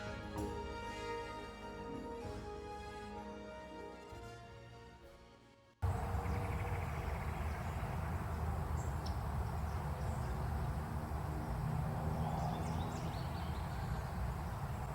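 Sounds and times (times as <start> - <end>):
closing music: 0.0 - 5.0.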